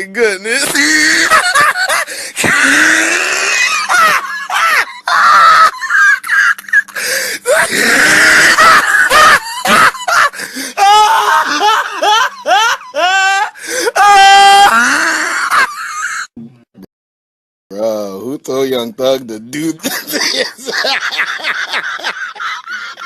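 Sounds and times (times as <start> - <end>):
person laughing hysterically: 0.5 - 16.3, 19.8 - 23.0.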